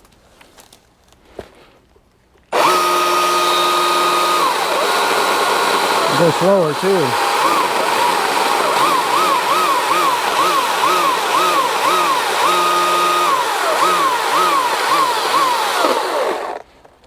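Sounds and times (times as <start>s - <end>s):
chainsaw cutting wood: 2.5s - 16.7s.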